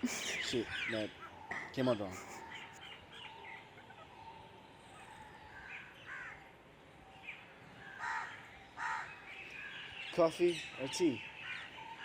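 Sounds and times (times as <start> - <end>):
faint bird chirps: 0.0 - 12.0
crow cawing: 5.7 - 6.5, 7.9 - 9.2.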